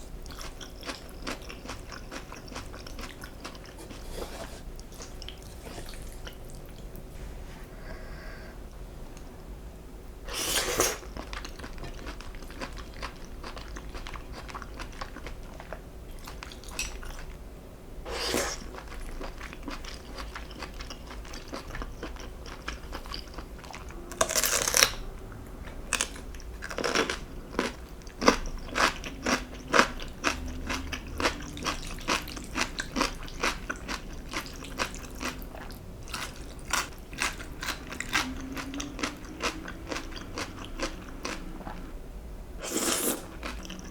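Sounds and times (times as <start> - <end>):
person chewing and biting: 18.1 - 24.9, 26.0 - 41.8
crisp crunches of food: 24.2 - 25.0.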